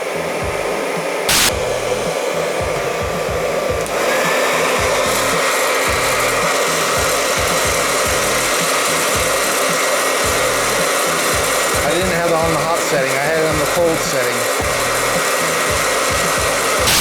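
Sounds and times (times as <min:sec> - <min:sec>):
hairdryer blowing: 0:00.0 - 0:17.0
thin steady whine: 0:00.0 - 0:17.0.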